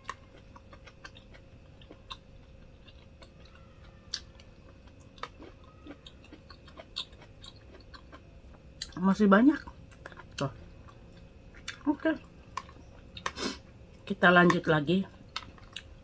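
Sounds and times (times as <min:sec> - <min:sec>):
person chewing: 0:00.0 - 0:09.0, 0:09.6 - 0:16.0.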